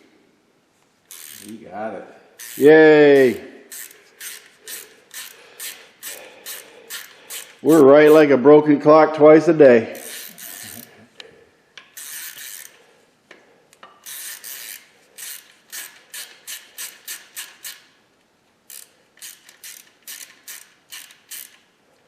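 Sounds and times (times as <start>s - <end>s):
ratchet wrench clicking: 1.1s - 1.6s, 2.4s - 8.2s, 10.0s - 10.9s, 11.8s - 12.8s, 13.8s - 18.0s, 18.7s - 21.7s.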